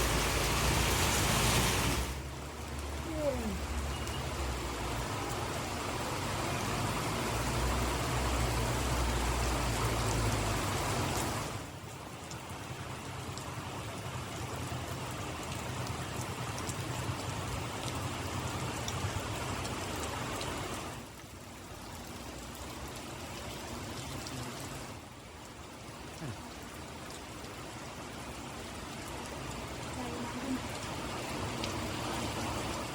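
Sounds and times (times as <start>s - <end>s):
rain falling: 0.0s - 32.9s
faint drip ticks: 3.8s - 4.4s.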